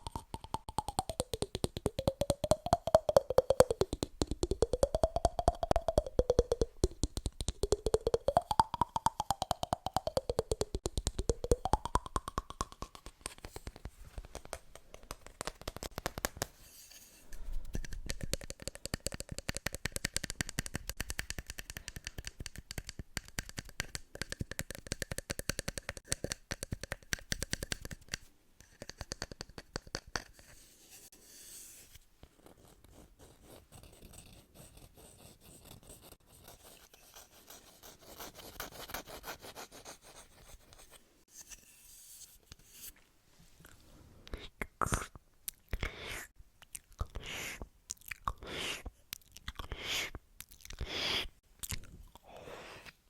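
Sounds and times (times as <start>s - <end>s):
scratching and rapid tapping: 0.0s - 16.6s, 17.6s - 30.3s.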